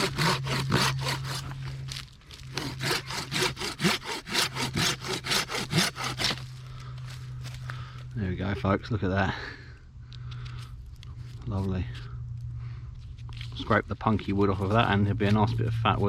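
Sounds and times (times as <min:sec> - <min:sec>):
hand saw cutting wood: 0:00.0 - 0:06.5.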